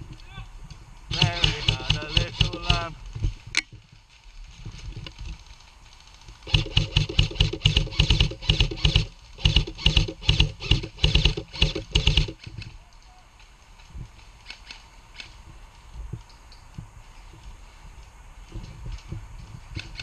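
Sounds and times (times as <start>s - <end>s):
airsoft gun rapid bursts: 1.1s - 3.0s, 6.4s - 12.6s.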